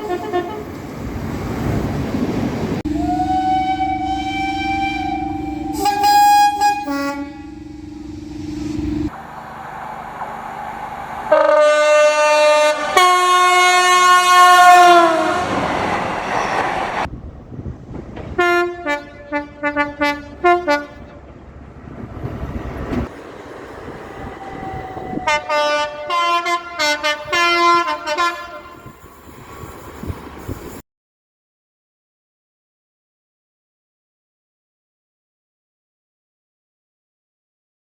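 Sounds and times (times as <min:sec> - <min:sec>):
short train horn toots: 0:00.0 - 0:00.8, 0:02.9 - 0:08.2, 0:11.3 - 0:15.8, 0:18.4 - 0:21.1, 0:24.7 - 0:29.0
two-tone train horn blasts: 0:00.0 - 0:00.8, 0:02.9 - 0:09.1, 0:11.3 - 0:15.8, 0:18.4 - 0:21.2, 0:24.4 - 0:29.0
rail noise: 0:00.0 - 0:30.8.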